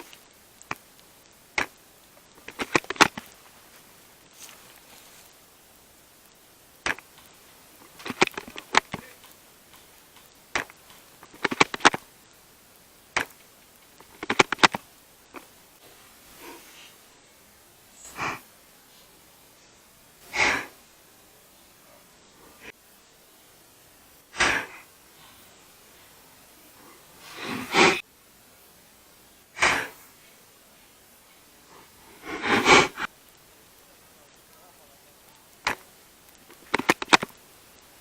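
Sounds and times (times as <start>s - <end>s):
soft breathy sounds: 13.2s - 28.0s, 29.4s - 38.0s
airsoft rifle shot: 24.4s - 24.8s.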